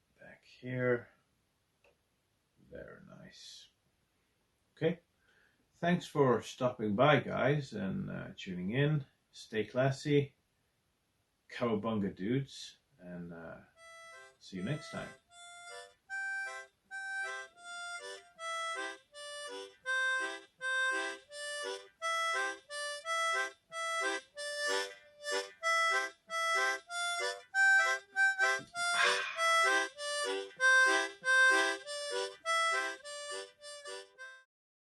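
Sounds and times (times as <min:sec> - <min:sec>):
short evenly spaced musical notes: 0:13.2 - 0:34.4.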